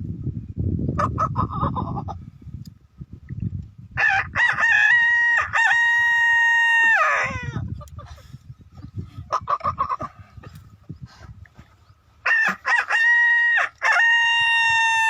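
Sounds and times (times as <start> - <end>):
man imitating rooster crow: 4.0 - 7.6, 12.2 - 15.0.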